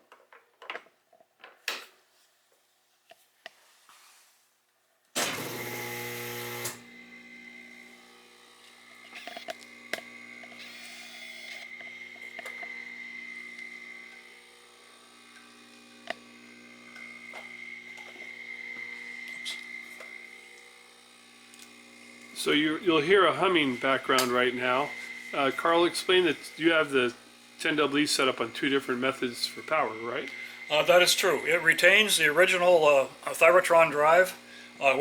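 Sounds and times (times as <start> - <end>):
electrical hum: 5.2 - 35.0
high whine: 8.9 - 14.3, 22.3 - 35.0.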